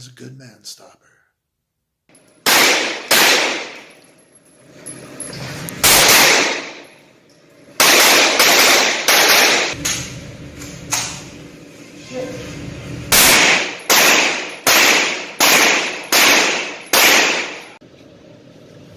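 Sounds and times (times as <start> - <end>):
pistol gunshots echoing: 2.4 - 4.0, 5.8 - 6.9, 7.8 - 9.8, 13.1 - 17.8.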